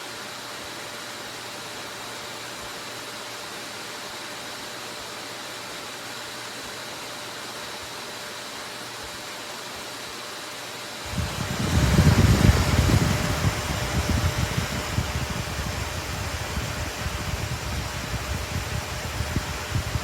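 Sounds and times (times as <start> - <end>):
small handheld fan running: 11.0 - 20.0
loud low rumble: 11.1 - 20.0.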